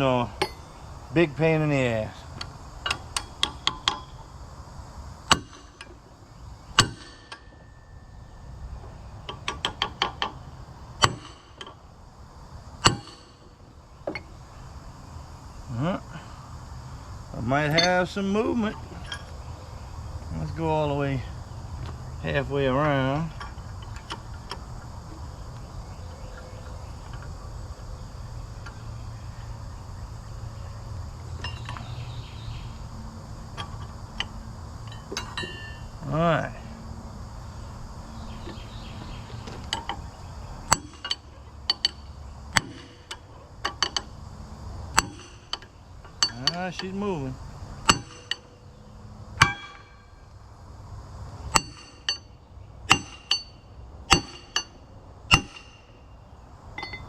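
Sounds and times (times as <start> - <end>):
insect chirring: 0.0 - 57.0
light metallic clinks: 0.4 - 0.8, 17.6 - 19.4, 31.4 - 31.9, 33.5 - 35.9, 45.0 - 47.2, 56.7 - 57.0.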